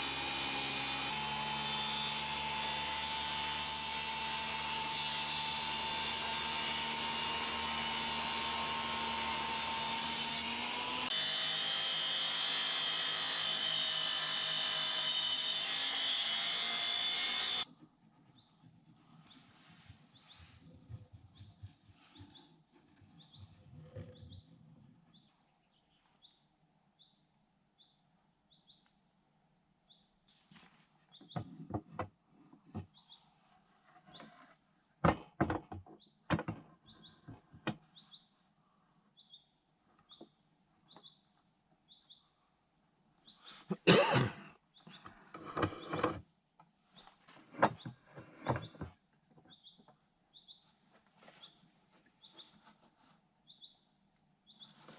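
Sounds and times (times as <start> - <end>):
small bird chirping: 20.1 - 26.4, 39.2 - 42.4, 49.5 - 50.8, 53.4 - 54.8
knocks of objects being handled: 35.0 - 36.7.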